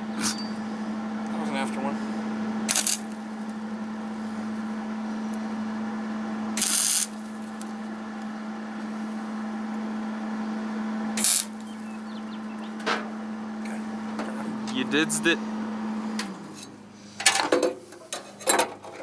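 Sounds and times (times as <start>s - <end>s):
steady electrical hum: 0.0s - 18.9s
sizzling welding arc: 2.7s - 3.3s, 6.6s - 7.7s, 11.2s - 11.8s.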